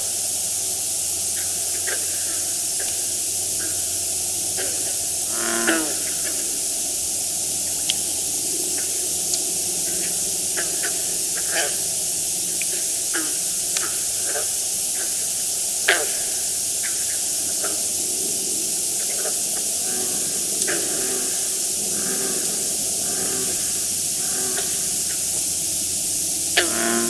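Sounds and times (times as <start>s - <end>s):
steady hiss: 0.0s - 27.0s
frogs snore-like calls: 0.9s - 27.0s.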